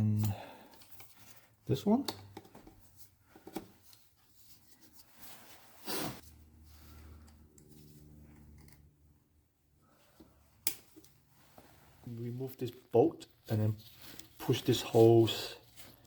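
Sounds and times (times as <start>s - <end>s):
scrape or rustle: 4.3s - 7.2s.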